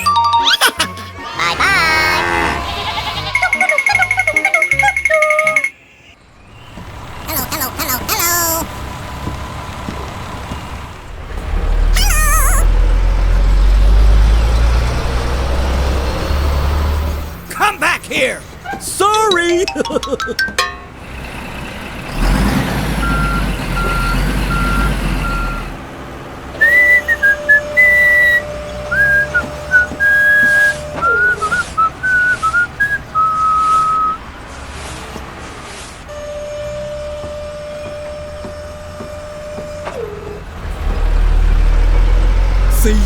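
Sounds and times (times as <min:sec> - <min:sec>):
cartoon truck engine rumble: 0:00.1 - 0:43.0
whistled tune of gliding notes: 0:03.4 - 0:06.1, 0:26.6 - 0:34.2
reversing beeps: 0:23.0 - 0:25.7.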